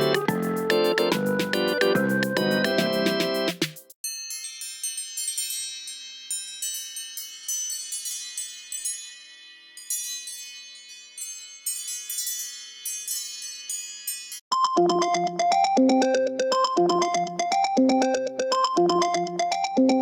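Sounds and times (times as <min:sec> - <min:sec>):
synth melody ringtone: 0:00.0 - 0:03.6, 0:14.5 - 0:20.0
tinkling chime ringtone: 0:04.0 - 0:20.0.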